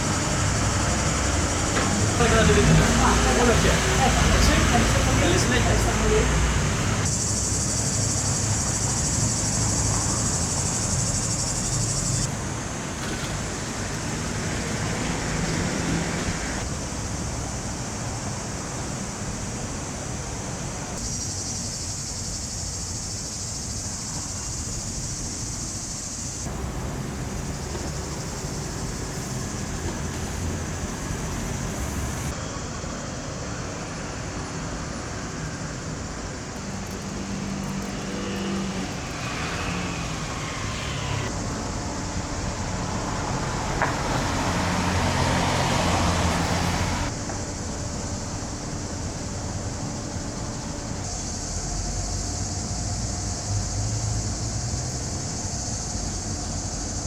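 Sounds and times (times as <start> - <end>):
cars passing on road: 0.0 - 16.7, 26.4 - 32.4, 36.5 - 47.2
steady high hiss: 26.5 - 32.3.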